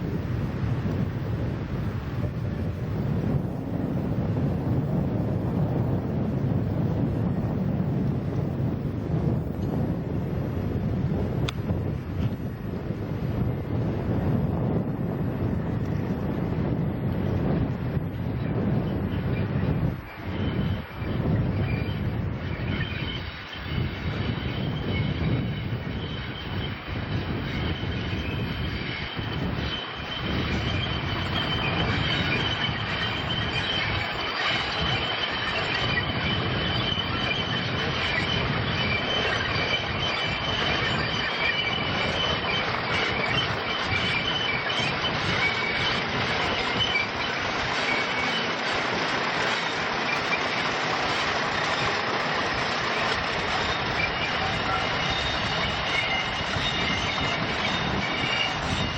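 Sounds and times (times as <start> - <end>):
diesel locomotive engine: 0.0 - 58.9
high whining tones: 20.1 - 58.9.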